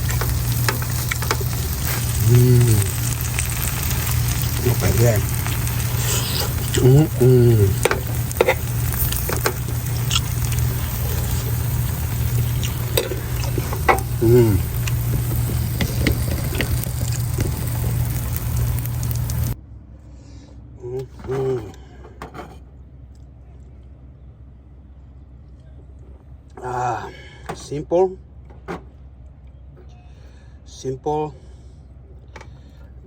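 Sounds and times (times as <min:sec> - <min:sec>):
fish sizzling in a pan: 0:00.0 - 0:19.6
low hum: 0:00.0 - 0:26.9.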